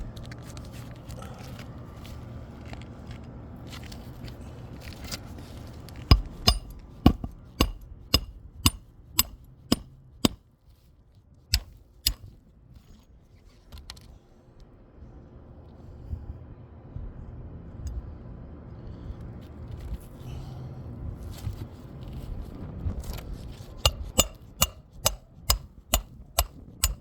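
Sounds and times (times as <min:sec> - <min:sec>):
hammer driving nails: 0:06.1 - 0:09.9, 0:23.9 - 0:27.0.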